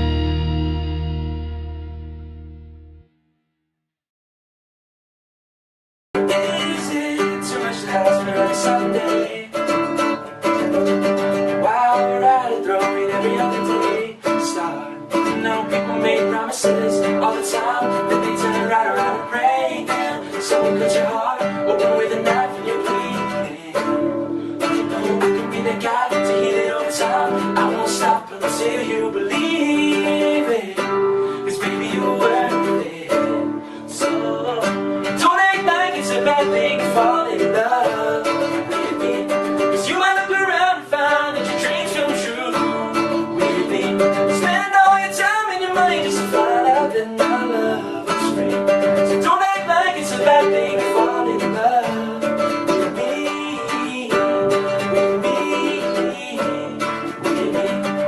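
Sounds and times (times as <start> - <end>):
strummed acoustic guitar: 0.0 - 2.4, 6.2 - 58.0
person singing: 6.2 - 58.0.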